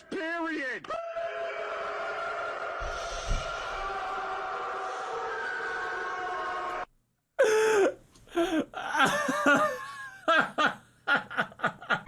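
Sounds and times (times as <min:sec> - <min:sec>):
bursts of laughter: 0:08.8 - 0:12.0.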